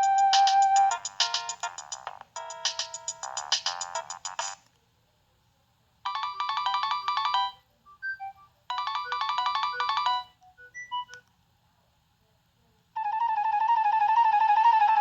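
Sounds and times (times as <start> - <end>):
trilling electronic ringtone: 0.0 - 4.6, 8.2 - 11.1, 13.0 - 15.0.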